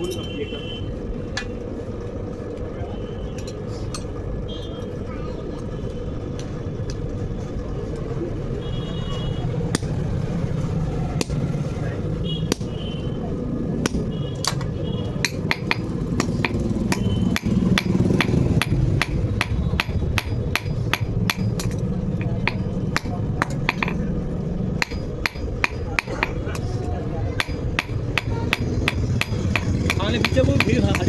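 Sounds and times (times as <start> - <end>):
steady low hum: 0.0 - 31.0
hammer striking metal on anvil: 12.5 - 12.8, 13.8 - 24.1, 24.8 - 26.6, 27.4 - 31.0.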